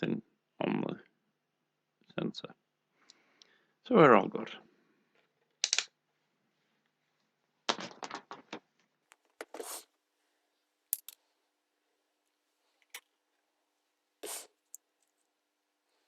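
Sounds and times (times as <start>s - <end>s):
sharp clicks of small parts: 5.6s - 5.9s, 10.9s - 11.2s.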